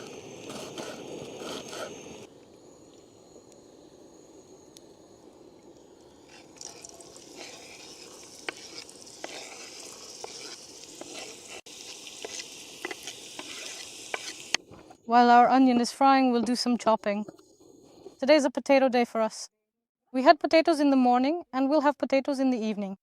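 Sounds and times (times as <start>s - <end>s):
stirring scraping strokes: 0.0s - 2.3s, 6.2s - 15.0s
onion sizzling in a pan: 0.0s - 14.9s.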